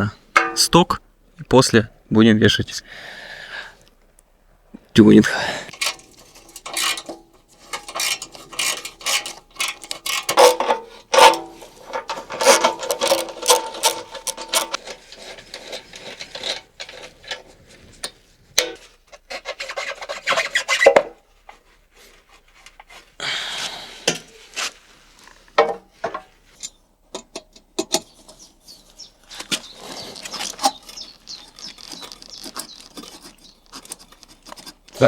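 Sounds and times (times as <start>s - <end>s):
hand tools clicking and scraping: 5.7s - 24.8s, 25.6s - 35.0s.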